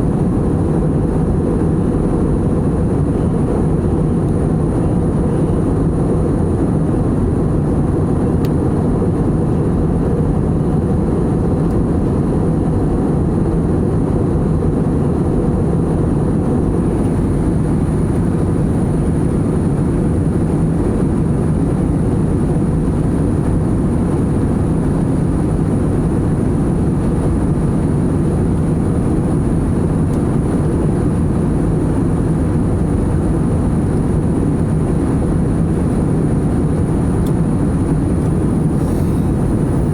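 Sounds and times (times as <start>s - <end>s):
low rush of engines and airflow: 0.0s - 39.9s
thin high whine: 38.3s - 39.9s.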